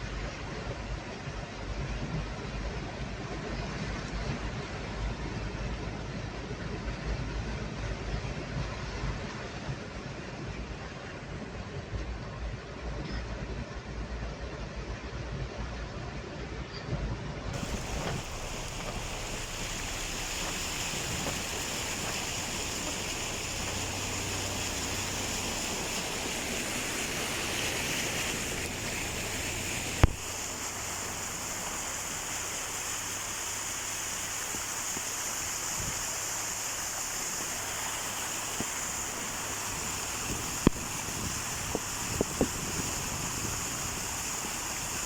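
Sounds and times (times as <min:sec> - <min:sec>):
floodwater rushing: 0:17.6 - 0:45.0.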